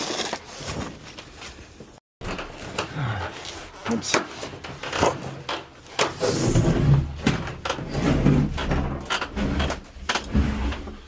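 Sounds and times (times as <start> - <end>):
knocks and clatters: 2.2 - 11.0
refrigerator rumbling as moved: 6.1 - 11.0.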